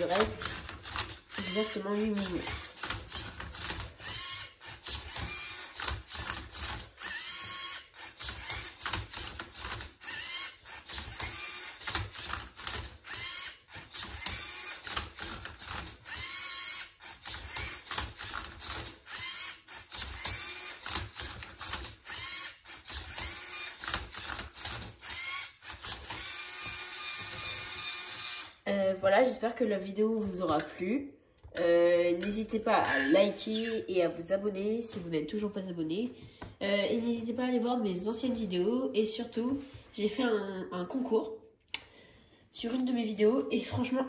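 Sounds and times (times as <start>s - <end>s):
servo motors whirring: 0.0s - 28.6s.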